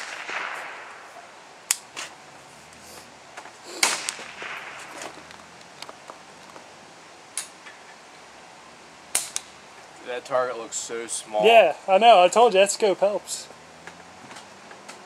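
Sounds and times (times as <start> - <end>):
rifle shots: 0.0 - 2.0, 3.8 - 5.3, 9.1 - 9.6
fainter echoing crack: 0.0 - 2.4, 3.4 - 6.7, 9.1 - 10.0.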